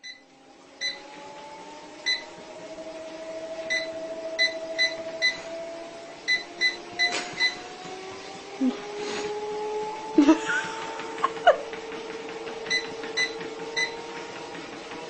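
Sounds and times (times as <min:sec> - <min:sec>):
steady rising tone: 0:00.0 - 0:15.0.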